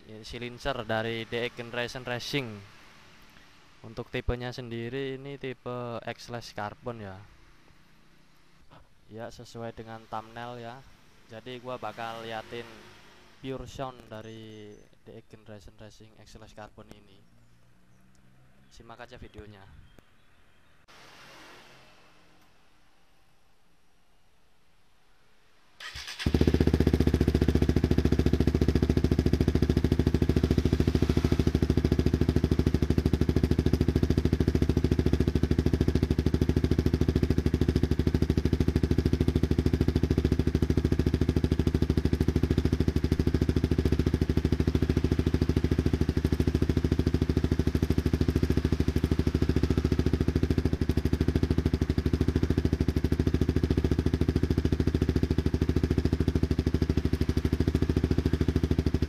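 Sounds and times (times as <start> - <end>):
motorcycle engine starting and idling: 25.8 - 59.0.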